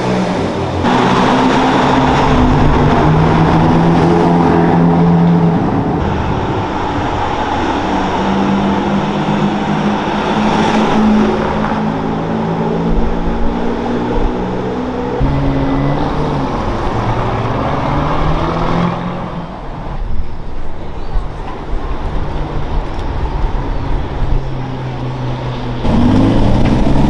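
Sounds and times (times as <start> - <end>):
supercar engine revving high: 7.8 - 19.7, 25.8 - 27.0.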